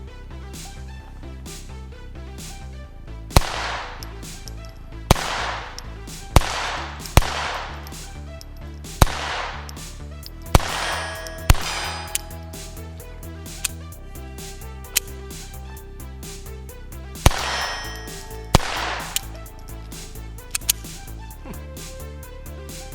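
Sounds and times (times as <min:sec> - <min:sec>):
background music: 0:00.0 - 0:22.9
pistol gunshots with echo: 0:03.4 - 0:04.0, 0:05.1 - 0:07.8, 0:09.0 - 0:09.6, 0:10.5 - 0:12.3, 0:17.2 - 0:19.3.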